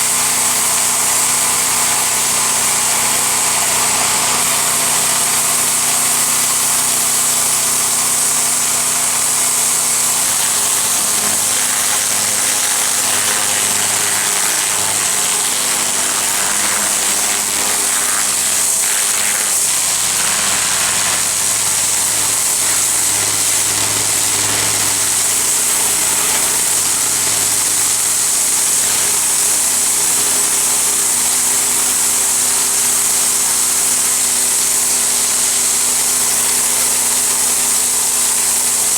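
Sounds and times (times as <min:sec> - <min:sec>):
pressure washer engine hum: 0:00.0 - 0:38.9
water jet hissing: 0:03.9 - 0:31.1.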